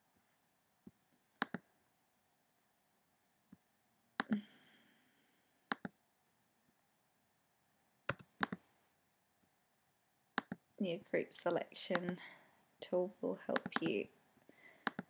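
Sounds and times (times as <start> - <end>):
computer mouse clicking: 1.4 - 1.6, 5.7 - 6.0, 8.1 - 8.6, 10.4 - 10.6, 13.6 - 13.9.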